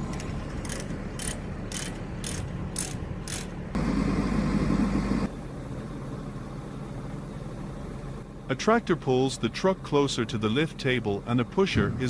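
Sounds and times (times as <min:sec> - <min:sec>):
regular mechanical clicking: 0:00.1 - 0:03.6
loud low rumble: 0:11.6 - 0:12.0.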